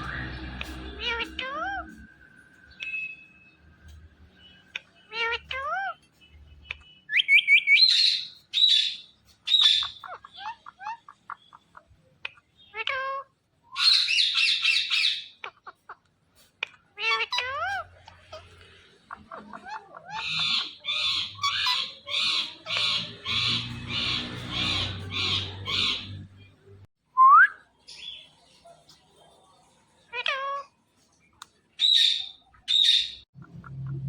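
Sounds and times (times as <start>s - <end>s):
parrot squawking: 0.0s - 2.1s, 4.7s - 6.0s, 7.1s - 16.0s, 16.6s - 26.7s, 30.1s - 30.7s, 31.8s - 34.0s.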